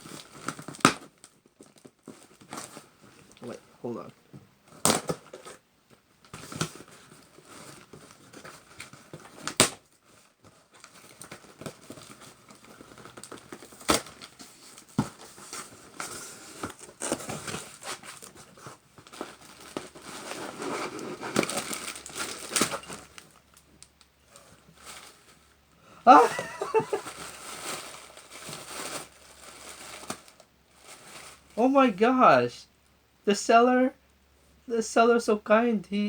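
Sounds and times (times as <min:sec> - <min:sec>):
wrapping crinkling and tearing: 0:00.0 - 0:03.6, 0:06.2 - 0:31.6
sharp snaps of wrapping: 0:00.2 - 0:02.7, 0:04.8 - 0:05.6, 0:08.3 - 0:10.0, 0:10.8 - 0:15.3.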